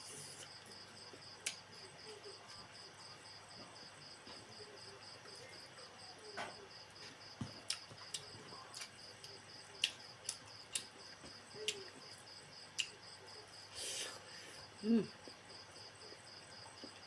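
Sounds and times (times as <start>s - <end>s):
cricket chirping: 0.1s - 17.0s
person chewing and smacking: 7.5s - 10.9s, 11.6s - 11.9s, 12.8s - 13.0s.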